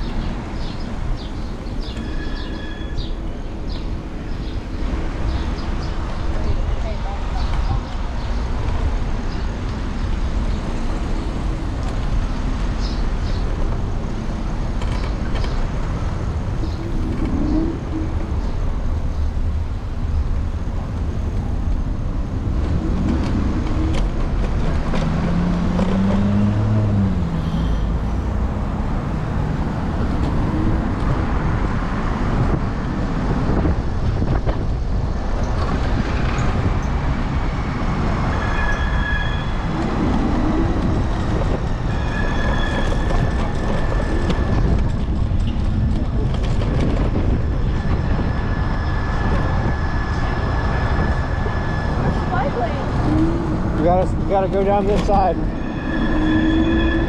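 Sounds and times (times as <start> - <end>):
street traffic rumble: 0.0 - 57.0
heavy vehicle engine passing: 47.2 - 57.0.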